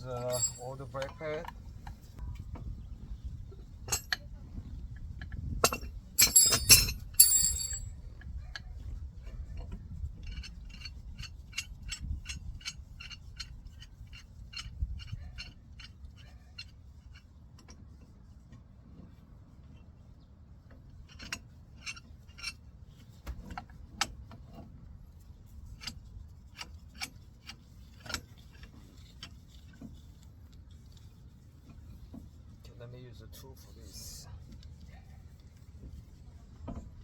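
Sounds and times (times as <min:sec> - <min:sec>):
metal tools clinking: 0:00.0 - 0:01.2, 0:05.6 - 0:07.9.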